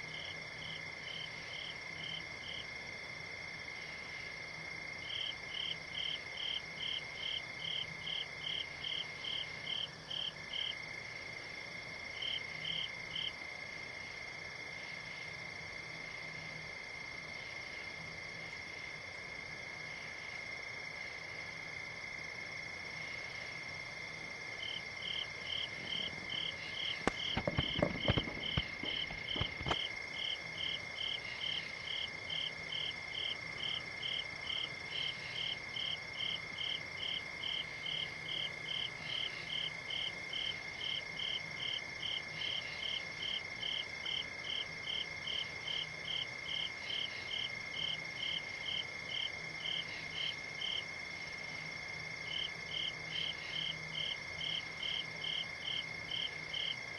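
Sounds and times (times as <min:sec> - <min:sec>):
insect chirping: 0:00.1 - 0:56.9
low thumps: 0:27.0 - 0:29.8.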